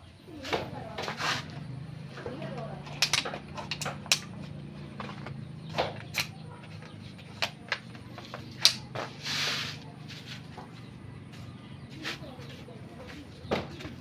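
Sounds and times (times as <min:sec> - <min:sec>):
sharp knocks and clacks: 0:02.2 - 0:09.2
short hiss: 0:09.2 - 0:09.8.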